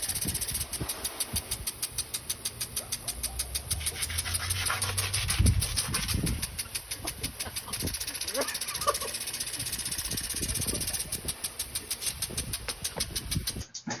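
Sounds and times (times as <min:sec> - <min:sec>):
lawn sprinkler ticking hiss: 0:00.0 - 0:13.7.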